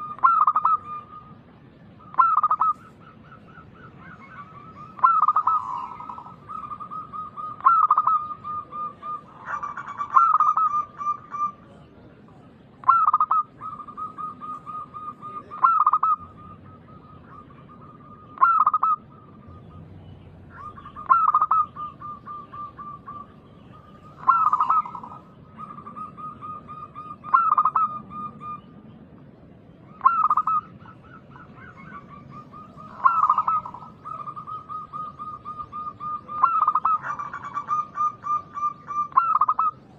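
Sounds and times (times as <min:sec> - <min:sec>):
dove cooing: 0:00.0 - 0:28.8, 0:29.8 - 0:39.9.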